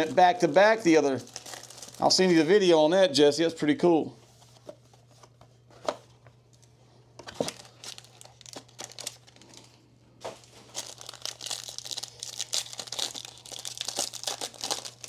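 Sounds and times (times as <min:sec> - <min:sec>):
wrapper crinkling and tearing: 0:00.0 - 0:02.3, 0:07.4 - 0:15.0.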